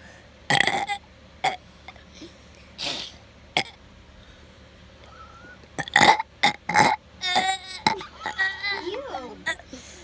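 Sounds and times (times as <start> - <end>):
child burping: 5.8 - 9.7.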